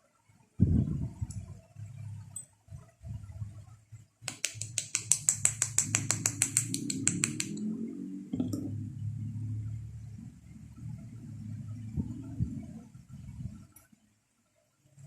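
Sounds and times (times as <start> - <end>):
rapid sharp small clicks: 4.2 - 7.7.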